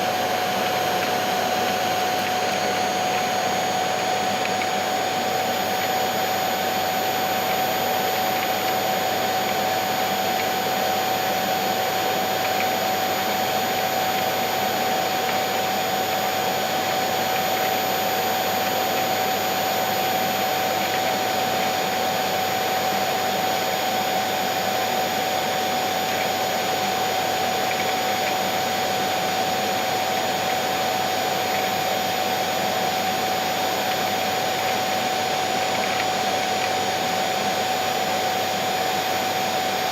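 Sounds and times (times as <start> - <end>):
vacuum cleaner motor running: 0.0 - 39.9.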